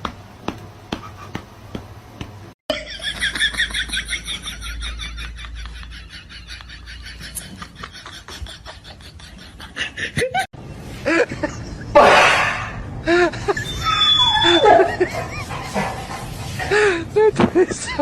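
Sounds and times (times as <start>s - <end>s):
people laughing: 2.7s - 10.5s.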